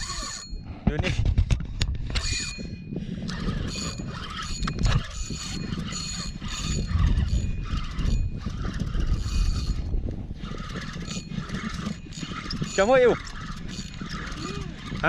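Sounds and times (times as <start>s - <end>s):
fishing reel ratcheting whir: 0.0s - 0.5s, 2.1s - 15.0s
steady low rumble: 4.6s - 10.8s.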